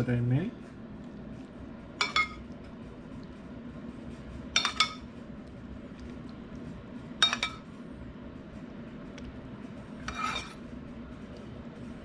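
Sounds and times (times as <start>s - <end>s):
metal spoon clinking on a dish: 2.0s - 2.4s, 4.6s - 5.1s, 7.2s - 7.7s, 10.0s - 10.6s.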